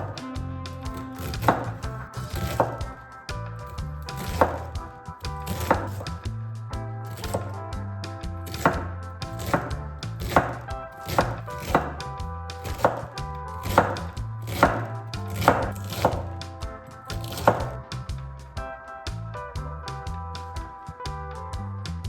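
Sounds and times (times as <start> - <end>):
knife chopping on cutting board: 0.9 - 2.9, 3.8 - 6.2, 7.1 - 7.6, 8.4 - 16.4, 17.1 - 17.8.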